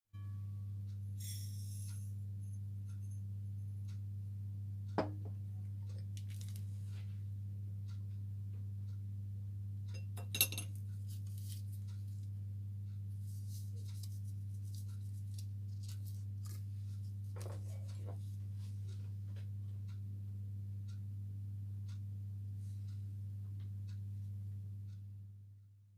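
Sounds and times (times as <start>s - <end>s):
steady low hum: 0.2s - 25.7s
utensils and glassware clinking: 10.0s - 10.8s.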